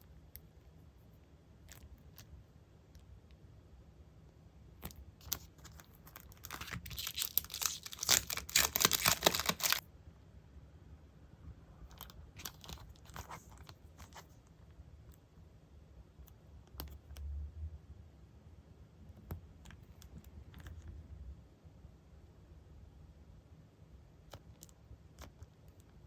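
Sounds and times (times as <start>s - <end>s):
paper crinkling and crackling: 5.2s - 9.8s, 12.0s - 14.4s.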